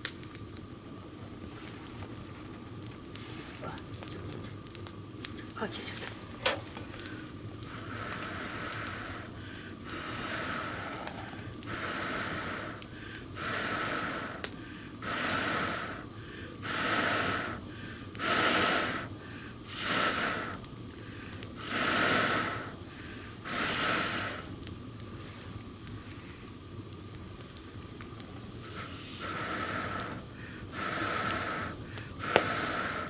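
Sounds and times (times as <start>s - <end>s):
person blowing breathily: 7.0s - 24.5s, 28.6s - 33.0s.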